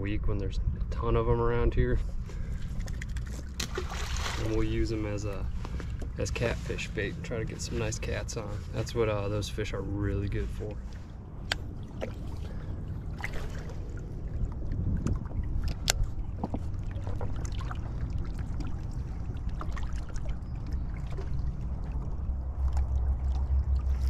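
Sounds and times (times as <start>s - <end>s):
low rumble: 0.0s - 24.0s
river water lapping: 2.0s - 24.0s.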